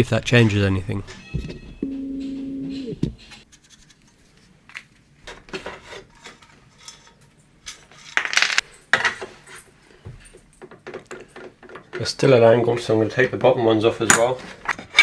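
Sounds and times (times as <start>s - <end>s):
short steady hum: 1.8s - 3.4s.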